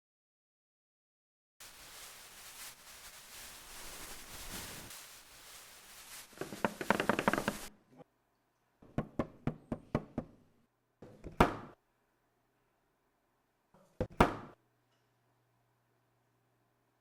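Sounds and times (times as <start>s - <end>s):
clattering small taps: 6.4s - 7.7s.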